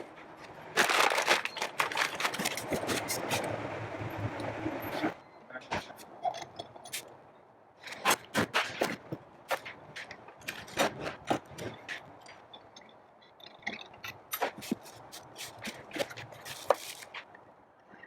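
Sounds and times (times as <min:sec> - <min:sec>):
packaging clicks and taps: 0:00.8 - 0:03.5.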